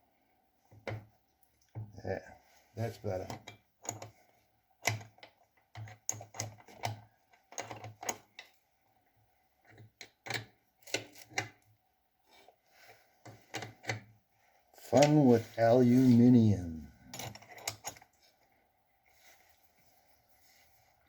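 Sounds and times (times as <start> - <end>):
metal parts clicking and knocking: 3.2 - 4.2, 4.8 - 8.6, 9.7 - 11.6, 17.1 - 18.1.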